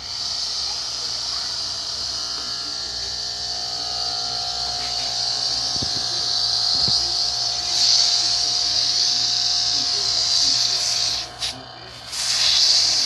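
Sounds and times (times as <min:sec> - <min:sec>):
air compressor humming: 0:00.0 - 0:13.0
air hissing: 0:04.7 - 0:13.0.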